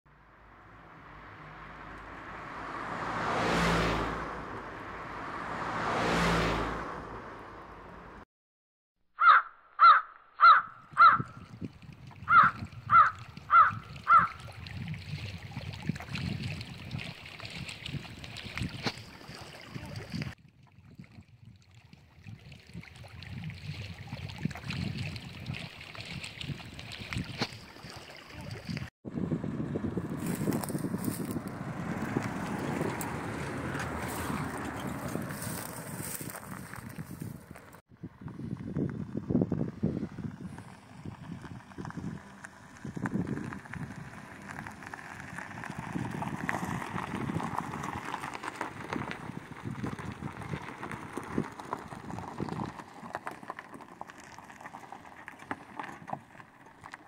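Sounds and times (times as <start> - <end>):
crow cawing: 9.2 - 11.3, 12.3 - 14.4.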